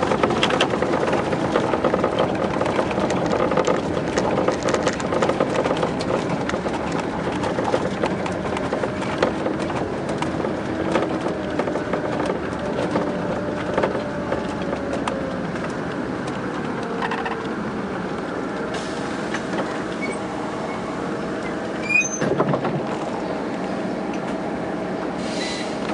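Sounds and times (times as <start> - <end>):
diesel coach engine running: 0.0 - 25.9
road noise: 0.0 - 25.9.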